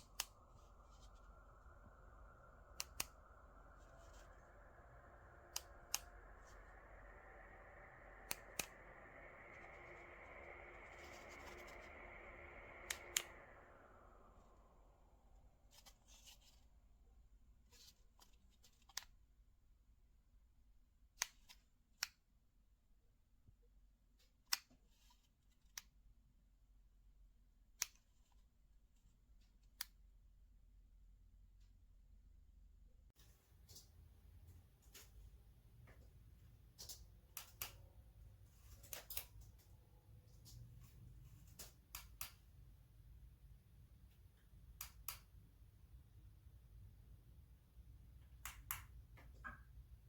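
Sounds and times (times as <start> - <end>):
sharp clicks: 0.0 - 13.8
ceiling fan whoosh: 0.0 - 16.4.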